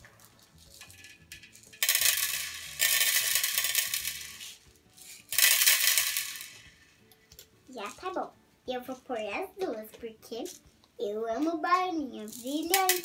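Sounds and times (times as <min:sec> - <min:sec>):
plastic beads rattling into bowl: 0:00.0 - 0:06.9, 0:12.2 - 0:13.0.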